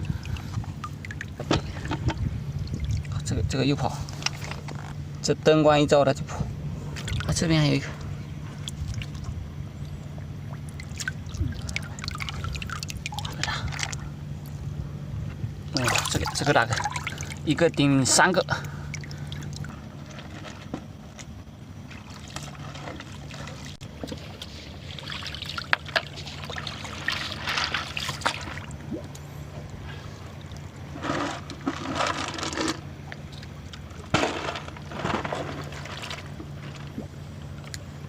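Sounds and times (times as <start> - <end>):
seawater sloshing among rocks: 0.0 - 5.0, 15.4 - 38.0
steady low hum: 0.0 - 38.0.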